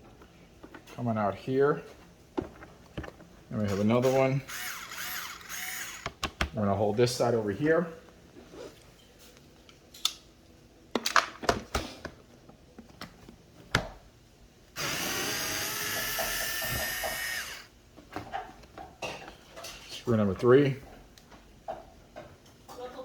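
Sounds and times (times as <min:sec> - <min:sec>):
power drill running: 0:03.7 - 0:06.2, 0:14.8 - 0:17.7.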